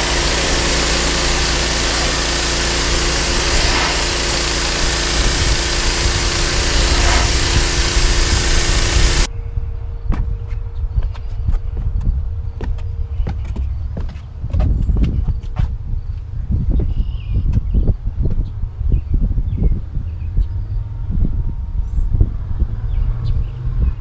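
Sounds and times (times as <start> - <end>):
pressure washer engine hum: 0.0 - 9.3
pressure washer spraying water: 0.0 - 9.3.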